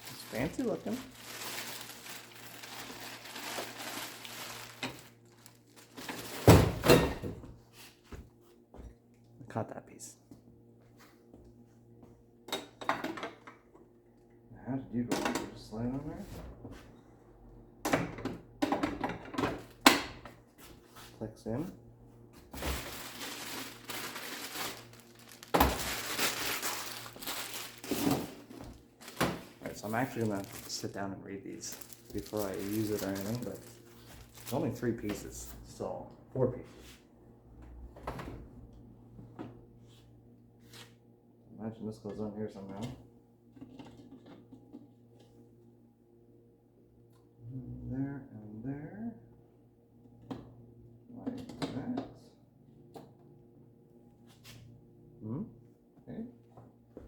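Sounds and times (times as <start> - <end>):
rustling packaging and parts: 0.0 - 6.8, 22.5 - 35.4.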